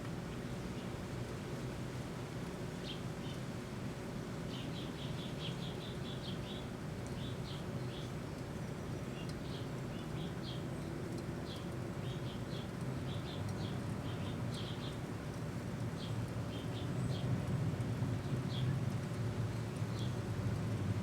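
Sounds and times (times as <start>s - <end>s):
small birds chirping: 4.5s - 17.4s, 18.2s - 20.2s.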